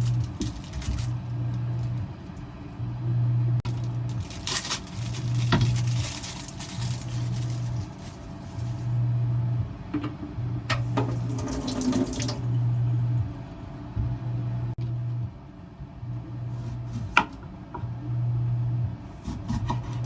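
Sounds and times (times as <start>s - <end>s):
low hum switching on and off: 0.0s - 4.2s, 8.6s - 20.0s.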